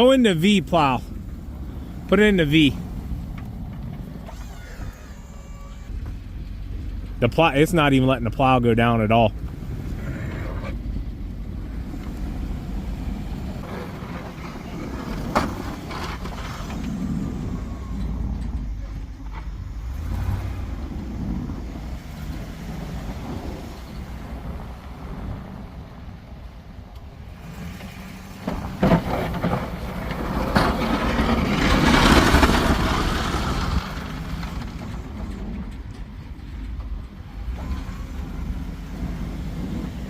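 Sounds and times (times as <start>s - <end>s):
plow truck engine running: 0.0s - 40.0s
rough scraping on snow and ice: 29.0s - 35.2s.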